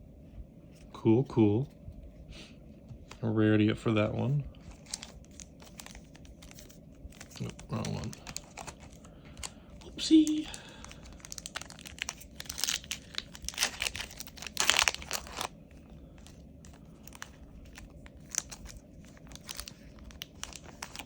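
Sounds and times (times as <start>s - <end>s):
cards being handled: 4.6s - 15.5s
foil pack crinkling and tearing: 4.6s - 21.0s.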